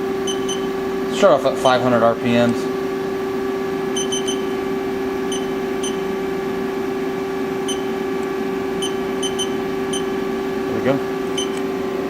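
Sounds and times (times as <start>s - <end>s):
machine humming: 0.0s - 12.0s
short electronic key beeps: 0.3s - 0.7s, 4.0s - 4.6s, 5.3s - 6.0s, 8.8s - 10.1s, 11.4s - 11.6s.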